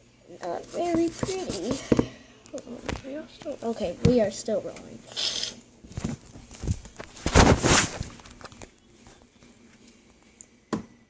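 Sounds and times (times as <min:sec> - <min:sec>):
container rustling and scraping: 0:00.5 - 0:02.1, 0:05.1 - 0:09.2.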